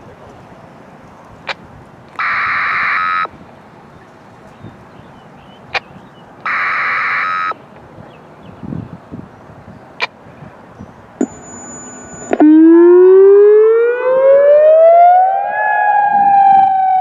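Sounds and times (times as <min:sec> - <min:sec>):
electronic buzzing tone: 0:11.2 - 0:13.3.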